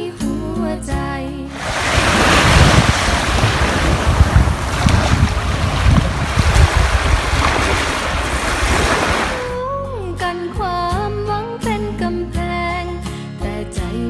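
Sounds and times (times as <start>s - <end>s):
rushing water: 1.5s - 9.6s
wind buffeting on microphone: 1.5s - 9.6s.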